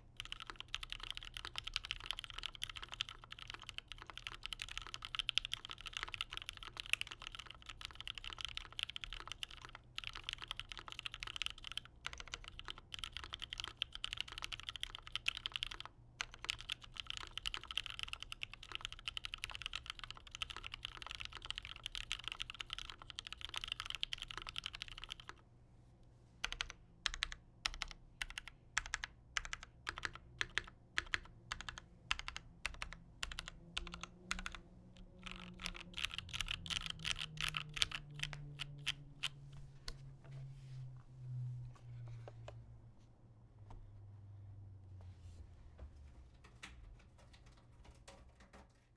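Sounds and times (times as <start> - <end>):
mechanical keyboard typing: 0.0 - 25.4, 26.4 - 40.0.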